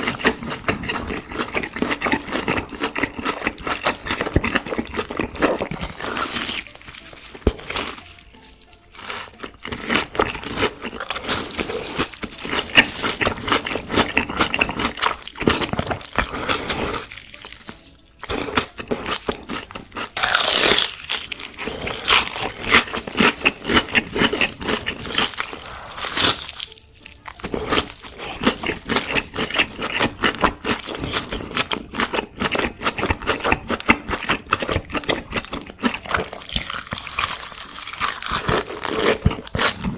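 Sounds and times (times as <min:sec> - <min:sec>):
crunchy bites and chewing: 0:00.0 - 0:39.9.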